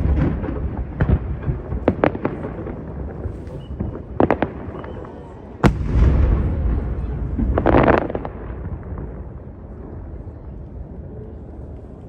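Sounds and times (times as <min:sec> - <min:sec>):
firework boom rumbling: 0:05.6 - 0:10.2.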